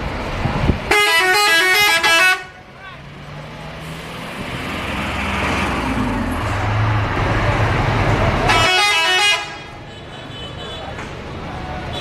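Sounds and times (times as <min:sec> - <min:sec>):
bus engine and road noise: 0:00.0 - 0:12.0
musical multi-tone bus horn: 0:00.9 - 0:02.6, 0:08.4 - 0:10.9.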